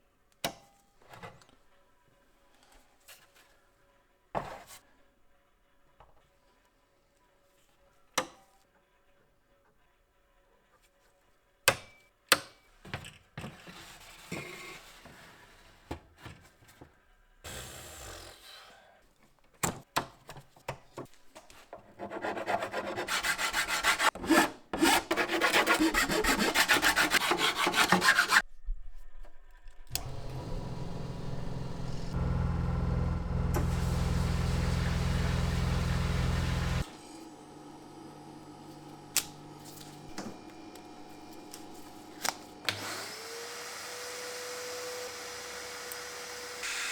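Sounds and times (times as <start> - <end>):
hand tool rasping: 22.0 - 28.4
small electric motor running: 30.0 - 46.9.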